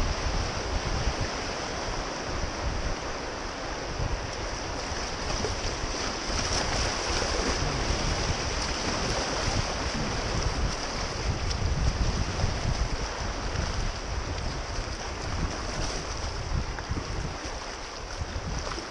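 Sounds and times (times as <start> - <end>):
river water rushing: 0.0 - 18.9
wind buffeting microphone: 0.0 - 18.9.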